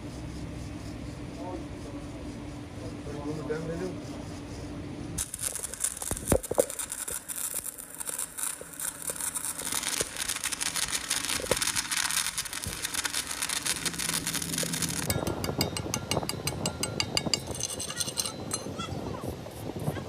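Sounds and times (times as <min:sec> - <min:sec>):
electric welding crackling hiss: 0:05.2 - 0:20.0
sharp metal knocks: 0:12.8 - 0:18.8.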